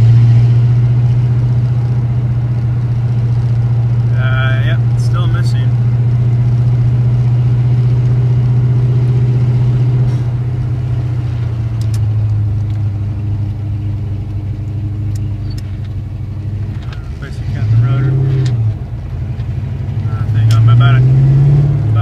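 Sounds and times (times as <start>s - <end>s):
car engine running while driving: 0.0s - 22.0s.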